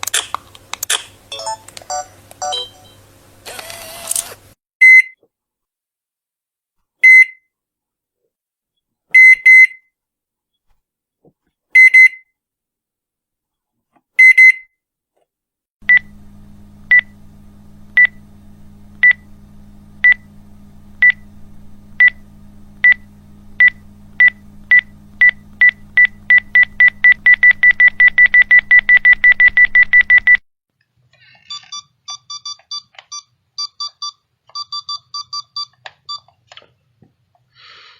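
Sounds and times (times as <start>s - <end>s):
beeps over low hum: 15.8s - 18.4s, 19.0s - 30.4s, 31.5s - 36.3s
alarm clock beeping: 31.7s - 36.2s.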